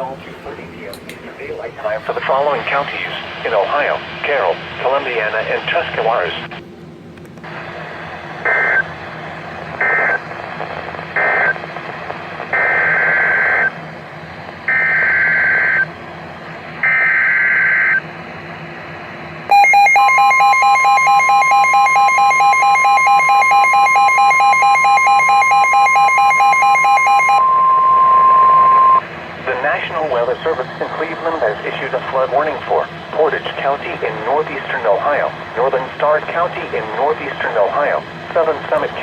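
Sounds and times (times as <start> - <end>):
loud long alert tone: 19.5 - 29.0.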